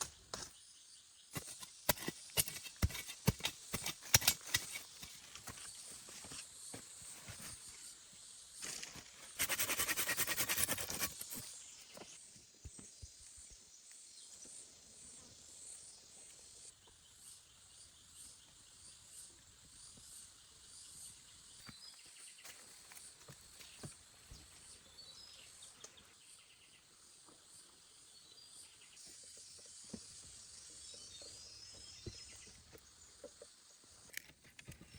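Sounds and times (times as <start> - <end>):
loud rasping sound: 1.4 - 5.5, 9.3 - 11.5.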